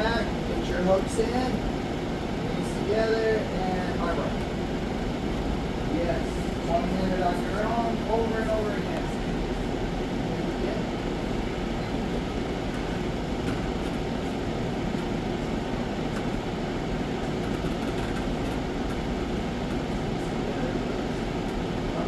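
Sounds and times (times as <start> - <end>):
background machinery rumble and hiss: 0.0 - 22.0.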